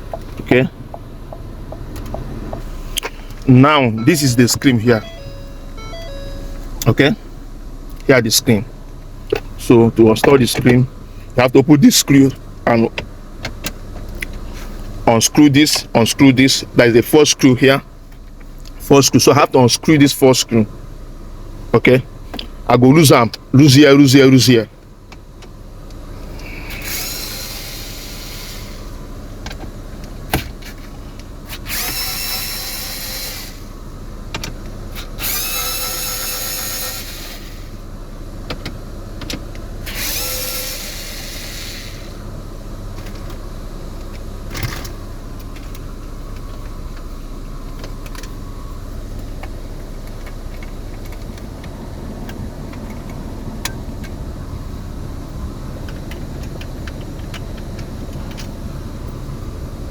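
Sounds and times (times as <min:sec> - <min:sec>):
car engine idling: 0:00.0 - 0:31.8, 0:32.5 - 0:35.2, 0:37.0 - 0:59.9
cordless screwdriver whirring: 0:31.6 - 0:33.7, 0:39.9 - 0:42.2.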